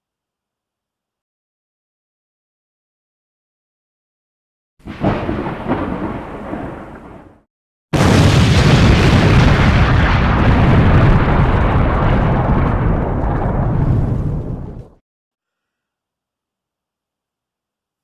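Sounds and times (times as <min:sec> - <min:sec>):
rumbling explosion boom: 0:04.9 - 0:15.0.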